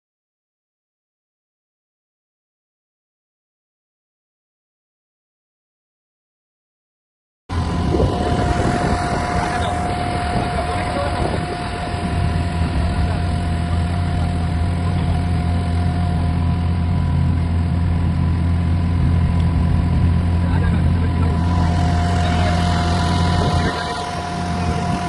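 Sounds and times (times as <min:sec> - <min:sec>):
engine droning: 0:07.5 - 0:25.0
thin steady whine: 0:07.5 - 0:25.0.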